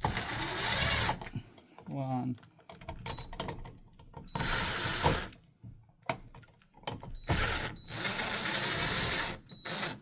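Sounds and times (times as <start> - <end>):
cordless drill driving screws: 0.0 - 1.2, 4.3 - 5.4, 7.2 - 10.0.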